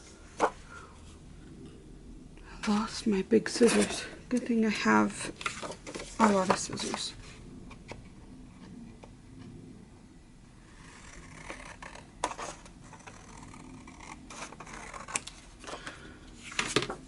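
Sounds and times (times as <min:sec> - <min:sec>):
paper rustling: 0:05.4 - 0:07.1
scissors cutting paper: 0:10.9 - 0:15.4.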